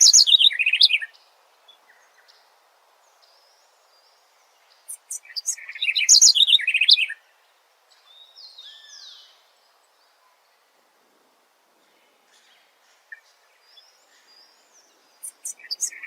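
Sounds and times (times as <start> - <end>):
birds chirping: 0.0 - 7.2, 11.8 - 16.0
birds whistling faintly: 0.0 - 10.8, 11.8 - 16.0.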